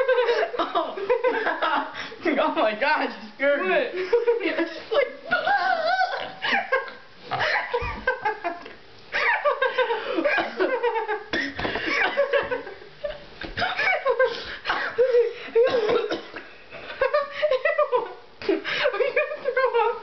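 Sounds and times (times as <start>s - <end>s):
young people giggling: 0.0s - 2.0s, 6.1s - 16.2s, 16.8s - 20.0s.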